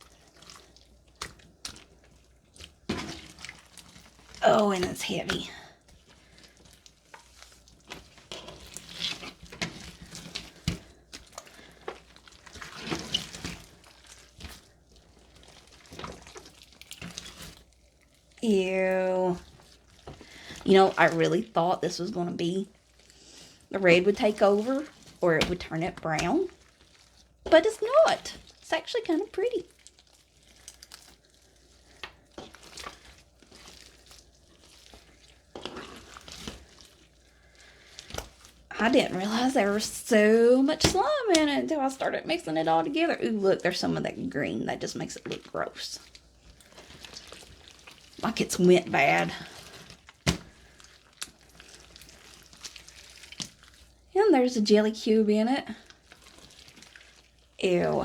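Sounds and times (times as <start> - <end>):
slime squelching: 0.0 - 58.0.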